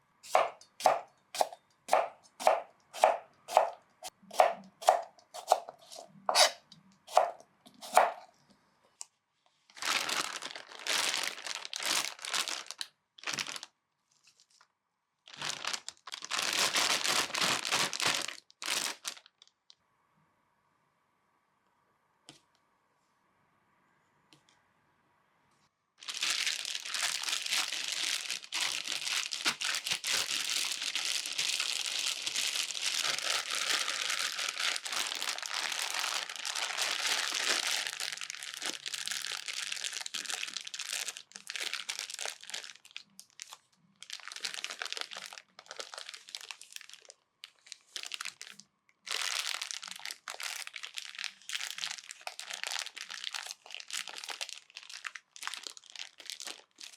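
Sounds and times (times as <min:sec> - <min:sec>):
dense crinkling and rustling: 0:09.6 - 0:19.6, 0:26.0 - 0:56.9.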